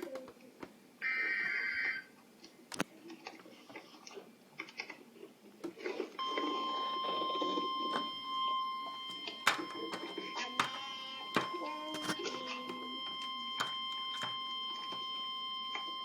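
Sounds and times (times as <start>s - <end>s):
faint clicks and hiss: 2.2s - 5.0s
steady warning alarm tone: 6.2s - 16.0s.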